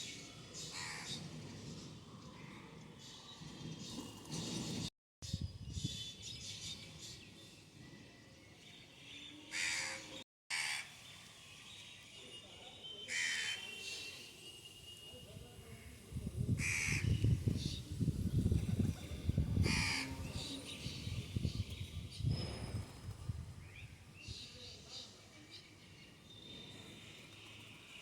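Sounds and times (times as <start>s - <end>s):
crow cawing: 9.6s - 10.9s, 16.6s - 17.1s, 19.6s - 20.2s.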